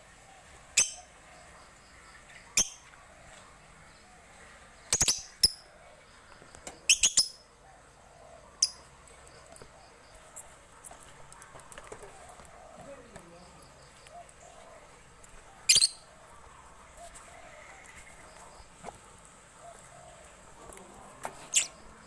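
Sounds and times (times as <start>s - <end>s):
bird chirping: 0.8s - 2.9s, 4.8s - 7.5s, 8.6s - 10.2s, 15.5s - 16.1s, 21.4s - 22.0s.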